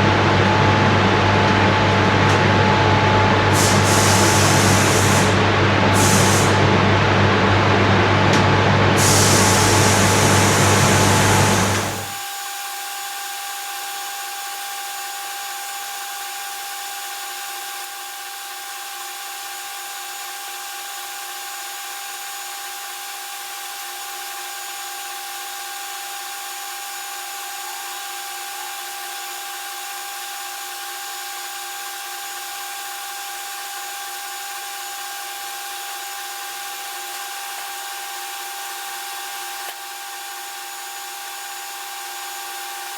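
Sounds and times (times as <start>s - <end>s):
air compressor deep hum: 0.0s - 12.2s
spray gun hissing: 3.5s - 6.6s, 8.9s - 12.2s.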